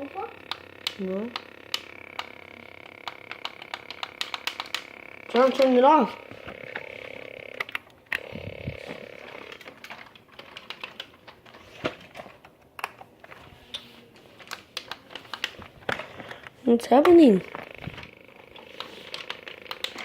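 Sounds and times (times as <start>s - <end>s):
toy robot clicks and taps: 0.0s - 5.9s, 16.9s - 17.9s, 18.7s - 20.0s
faint electronic hum: 0.0s - 20.0s.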